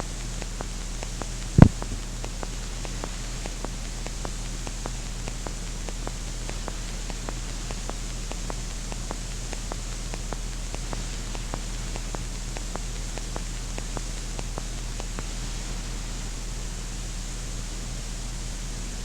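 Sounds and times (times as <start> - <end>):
electrical hum: 0.0 - 19.0
recording hiss: 0.0 - 19.0
loud low thump: 1.6 - 2.1.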